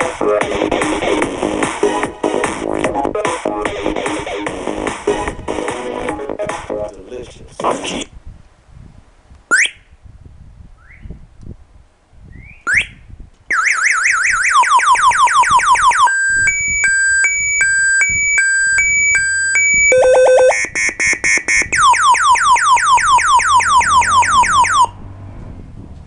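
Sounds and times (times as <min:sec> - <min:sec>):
motorcycle alarm siren: 0:13.5 - 0:25.0.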